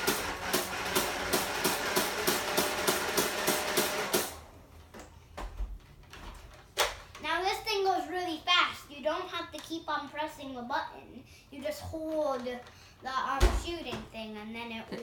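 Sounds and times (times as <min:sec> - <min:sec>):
toy blaster firing rattle: 0:00.0 - 0:04.4.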